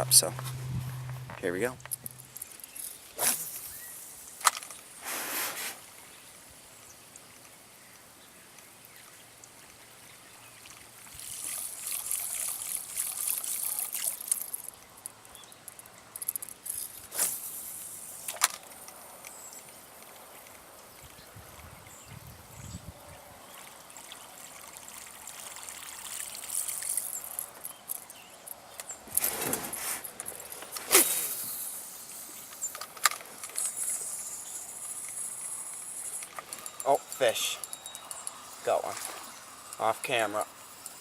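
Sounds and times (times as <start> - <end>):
water splashing and trickling: 5.9 - 18.3, 23.3 - 28.7, 29.4 - 41.0.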